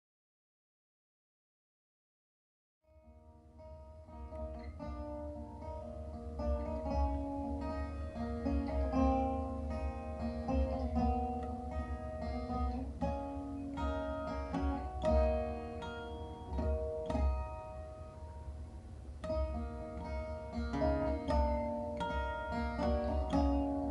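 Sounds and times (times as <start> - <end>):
plucked string music: 2.9 - 23.9.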